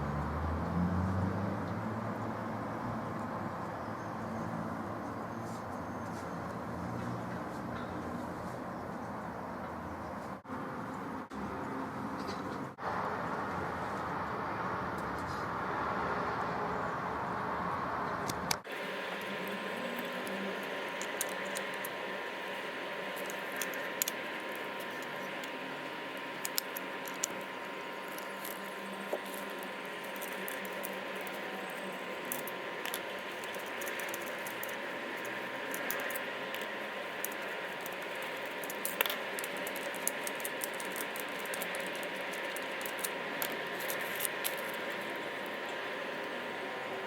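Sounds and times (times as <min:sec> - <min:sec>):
faint constant tone: 0:16.4 - 0:47.0
steady hiss: 0:18.6 - 0:47.0
computer hardware clicking: 0:18.7 - 0:46.4.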